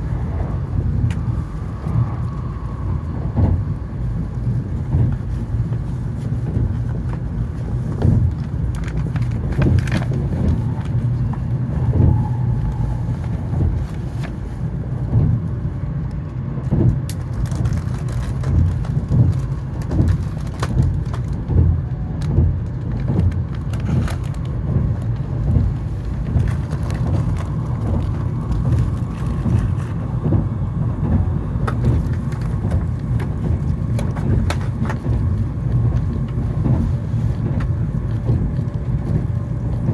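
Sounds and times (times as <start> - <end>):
train cabin low rumble: 0.0 - 39.9
small clicks and rattles: 4.9 - 11.5, 16.1 - 39.9.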